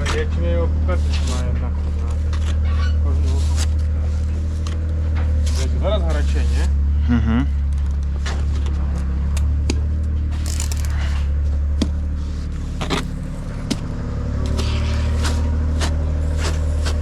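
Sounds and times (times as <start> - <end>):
motor humming: 10.3 - 11.2, 12.6 - 17.0.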